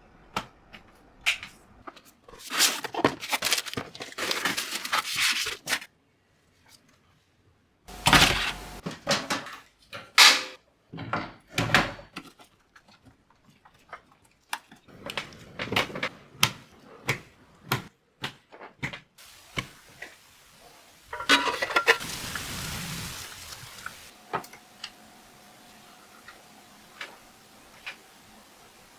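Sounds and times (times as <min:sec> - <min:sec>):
rustling and scraping: 0:01.9 - 0:05.9, 0:07.9 - 0:08.9, 0:21.1 - 0:24.1.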